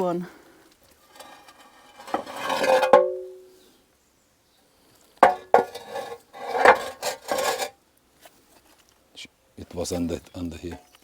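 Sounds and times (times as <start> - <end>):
clay roof tiles knocking: 2.0 - 3.4, 5.2 - 7.6.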